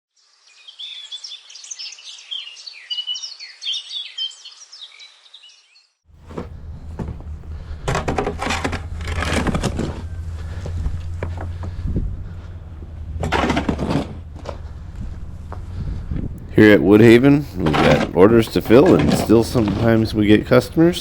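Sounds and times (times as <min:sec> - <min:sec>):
birds chirping: 0:00.2 - 0:21.0
rushing scraping noise: 0:06.2 - 0:21.0
steady low hum: 0:06.2 - 0:21.0.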